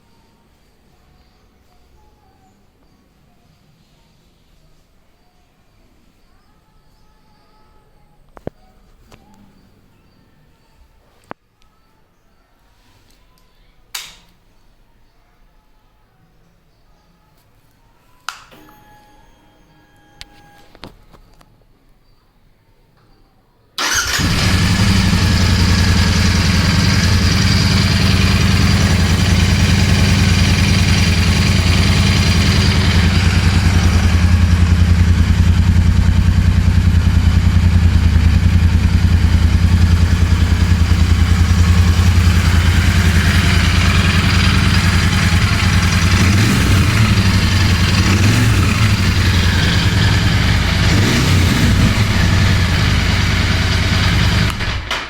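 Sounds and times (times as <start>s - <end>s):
motorcycle engine starting and idling: 23.8s - 55.0s.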